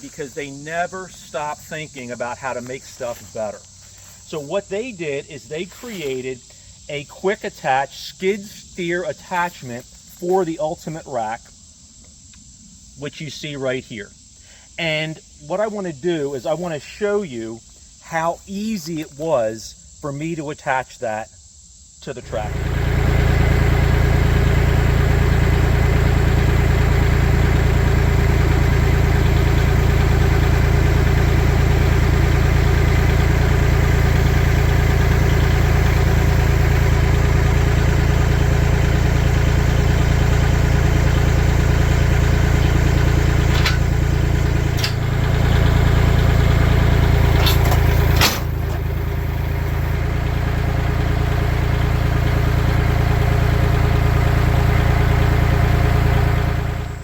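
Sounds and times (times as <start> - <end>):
tractor diesel engine running: 0.0 - 10.7, 22.2 - 57.0.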